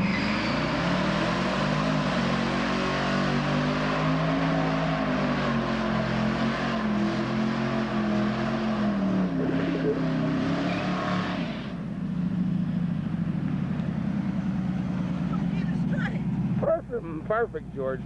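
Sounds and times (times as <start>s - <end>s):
car engine revving high: 0.0s - 12.4s
tires spinning on pavement: 0.0s - 16.7s.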